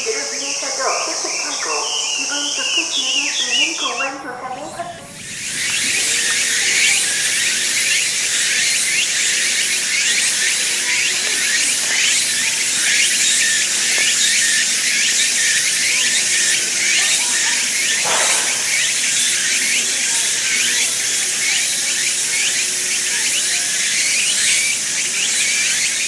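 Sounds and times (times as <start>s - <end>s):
short repeating calls: 0.0s - 7.4s, 16.9s - 19.2s
high-pitched buzzing chorus: 0.0s - 23.8s.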